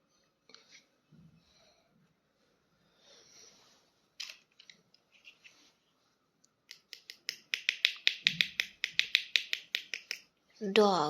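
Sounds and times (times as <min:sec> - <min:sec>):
sharp clicks: 0:06.7 - 0:10.3.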